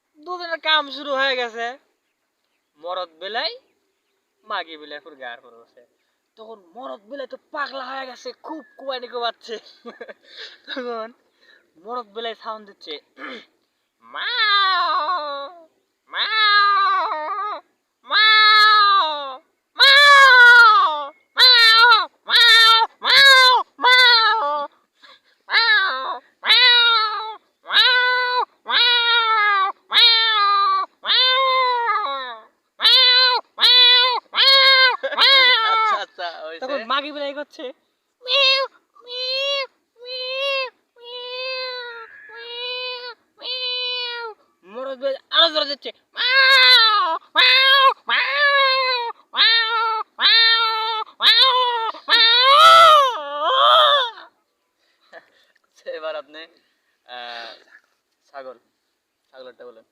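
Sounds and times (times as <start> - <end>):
man imitating cat yowls: 14.0 - 24.8, 25.5 - 36.6, 38.2 - 54.4.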